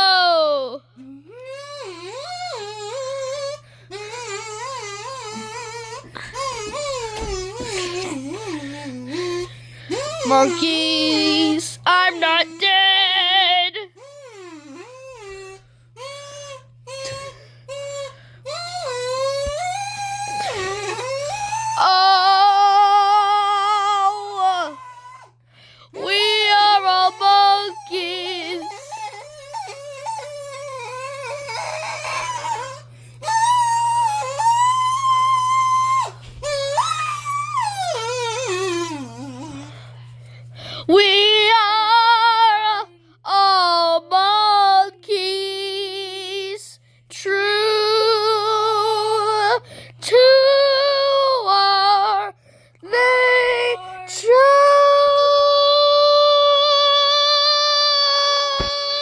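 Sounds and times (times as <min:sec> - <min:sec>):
high-pitched wordless singing: 0:00.0 - 0:01.2, 0:10.0 - 0:13.9, 0:21.6 - 0:24.9, 0:26.0 - 0:29.2, 0:40.9 - 0:59.0.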